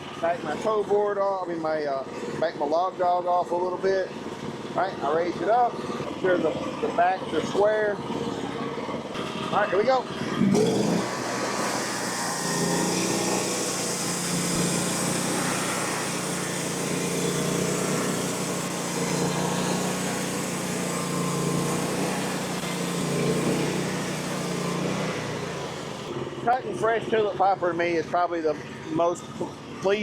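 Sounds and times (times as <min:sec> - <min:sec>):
sawmill engine humming: 0:03.5 - 0:26.6
band saw blade hissing through wood: 0:10.8 - 0:26.1.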